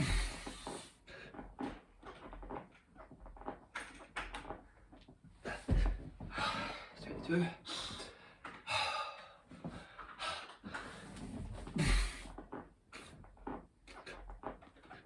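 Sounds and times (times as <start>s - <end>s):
hands and feet knocking floor: 1.3s - 6.7s.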